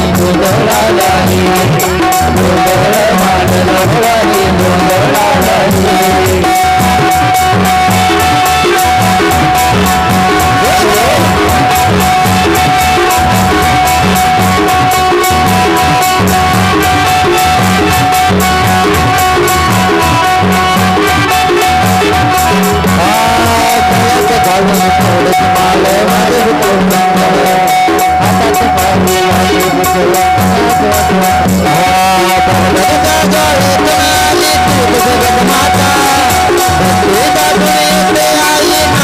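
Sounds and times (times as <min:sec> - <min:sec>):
fast steady drum beat: 0:00.0 - 0:39.0
long held melody note: 0:02.0 - 0:28.4.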